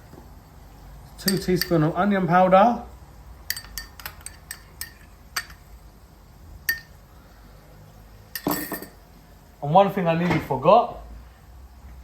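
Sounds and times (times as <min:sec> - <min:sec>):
teaspoon clinking on kitchenware: 0:01.2 - 0:01.8, 0:03.5 - 0:05.6, 0:06.7 - 0:07.0, 0:08.4 - 0:09.0.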